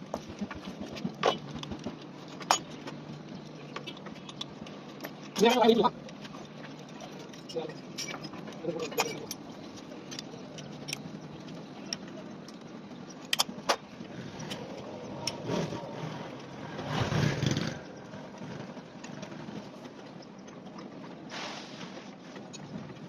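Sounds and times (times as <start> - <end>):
workshop background noise: 0.0 - 23.0
hand tools clinking on metal: 2.2 - 11.1.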